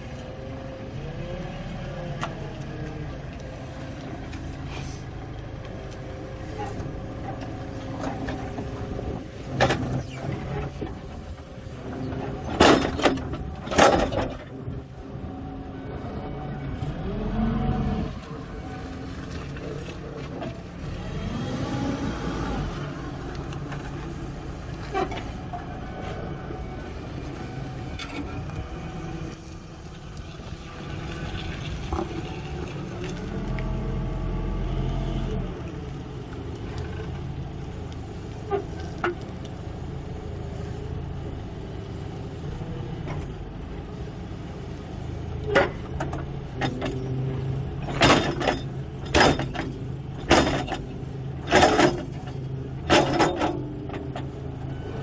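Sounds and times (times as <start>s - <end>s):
sharp metallic clanks: 47.9s - 54.2s.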